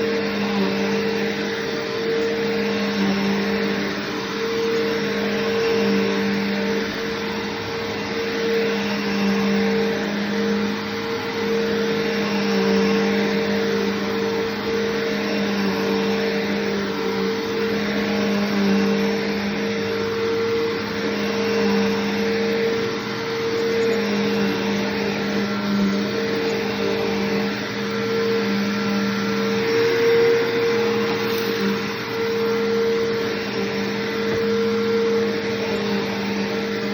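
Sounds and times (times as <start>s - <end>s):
vacuum cleaner running: 0.0s - 36.9s.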